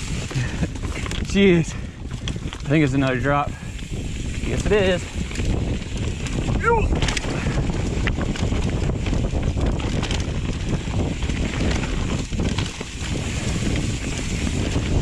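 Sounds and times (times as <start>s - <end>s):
bike knocking and rattling: 0.0s - 15.0s
wind buffeting microphone: 0.0s - 15.0s.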